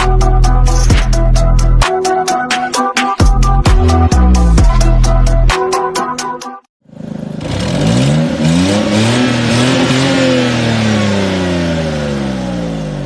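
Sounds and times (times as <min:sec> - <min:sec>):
car engine starting and revving: 0:06.9 - 0:13.0.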